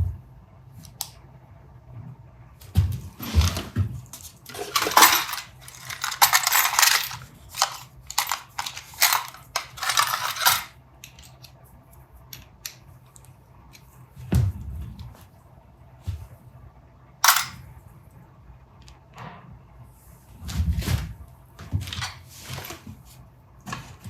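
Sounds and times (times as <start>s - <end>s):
rubbing metal parts: 4.3s - 11.5s, 17.2s - 17.6s.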